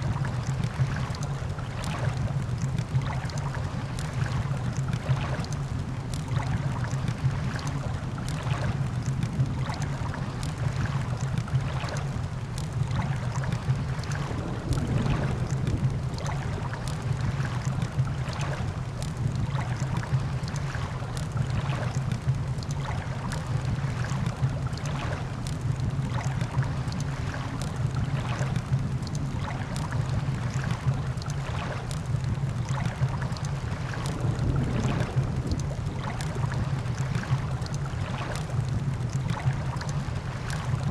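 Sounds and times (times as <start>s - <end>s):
ocean surf washing: 13.7s - 20.0s, 33.1s - 38.7s
campfire crackling and popping: 31.9s - 39.8s.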